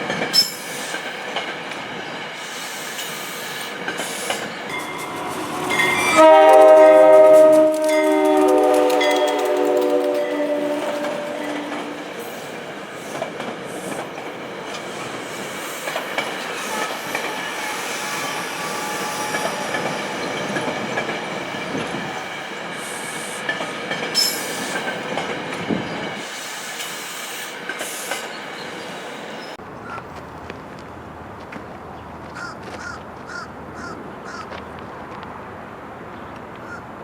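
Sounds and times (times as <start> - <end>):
train wheels clacking: 0.0 - 28.4
train wheels squealing: 0.3 - 1.2, 2.4 - 9.5, 14.7 - 23.4, 24.1 - 29.6
train horn: 4.7 - 12.3, 16.6 - 20.8.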